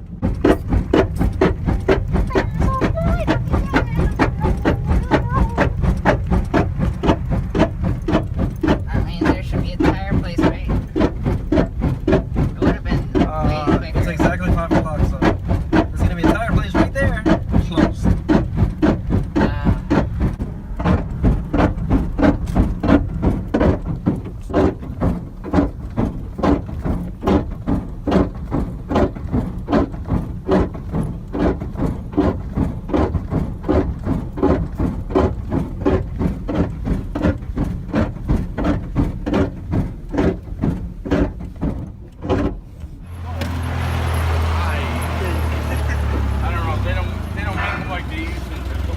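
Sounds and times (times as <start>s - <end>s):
damaged tire thumping: 0.0s - 48.9s
low road rumble: 0.0s - 48.9s.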